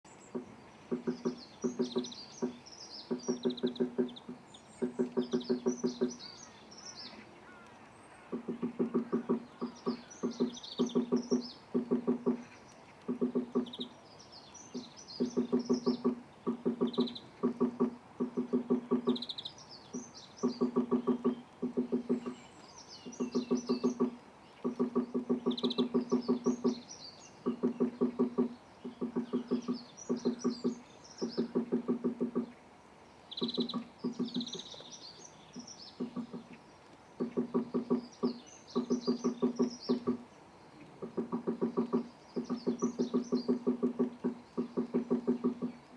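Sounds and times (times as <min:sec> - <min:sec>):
small birds chirping: 0:00.0 - 0:45.9
woodpecker knocking on tree trunk: 0:00.3 - 0:06.2, 0:08.3 - 0:13.8, 0:14.7 - 0:19.2, 0:20.4 - 0:22.3, 0:23.1 - 0:26.8, 0:27.4 - 0:32.5, 0:33.4 - 0:34.8, 0:35.6 - 0:36.6, 0:37.2 - 0:40.2, 0:41.0 - 0:45.8.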